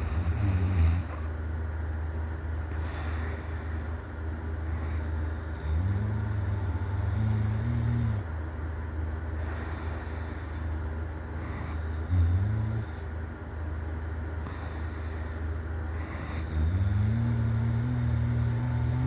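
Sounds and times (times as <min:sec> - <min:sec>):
person snoring: 0:00.0 - 0:01.2, 0:04.7 - 0:08.3, 0:11.5 - 0:13.1, 0:16.0 - 0:19.0
steady low hum: 0:00.0 - 0:19.0.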